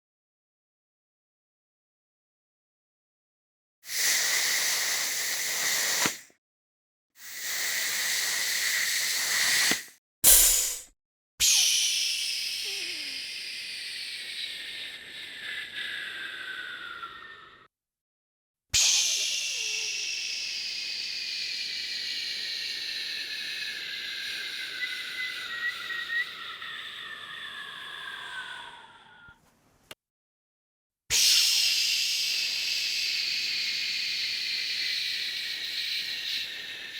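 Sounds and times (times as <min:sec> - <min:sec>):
pressurized air hissing: 0:04.1 - 0:06.2, 0:07.7 - 0:10.9.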